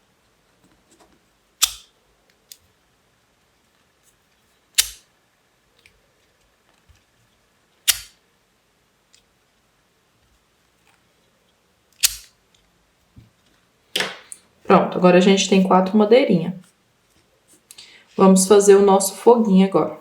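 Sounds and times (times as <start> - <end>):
lighter clicking: 1.6 - 1.9, 4.8 - 5.0, 7.9 - 8.1, 12.0 - 12.3.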